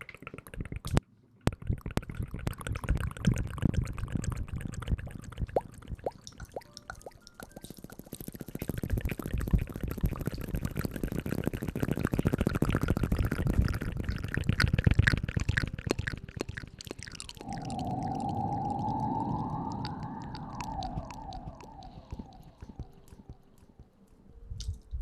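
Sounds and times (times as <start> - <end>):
wet crackling and rustling hair: 6.1 - 24.2
steady drawn-out tone: 17.4 - 24.1.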